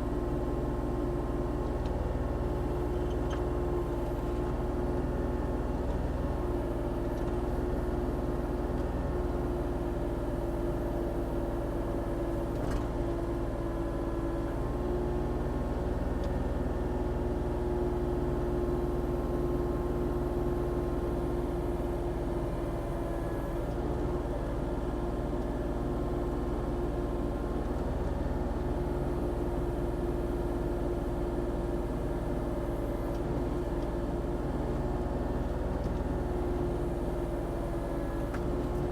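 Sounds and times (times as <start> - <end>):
excavator diesel engine running: 21.5 - 38.9.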